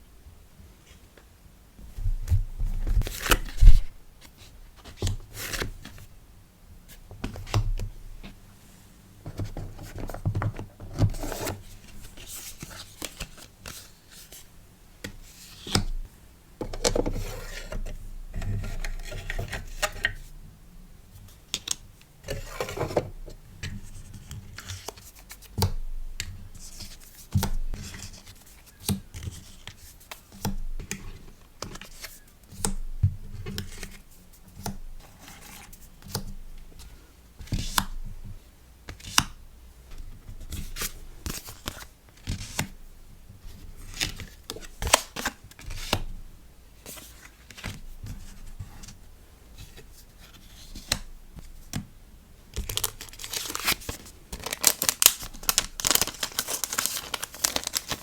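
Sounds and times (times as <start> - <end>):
paper and plastic packaging rustling: 2.1 - 6.1, 52.5 - 58.0.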